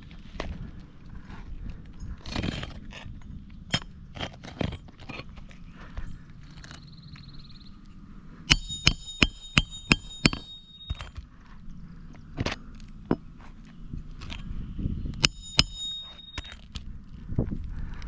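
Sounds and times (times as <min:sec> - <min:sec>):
hammer striking roofing nails: 0:08.5 - 0:11.2.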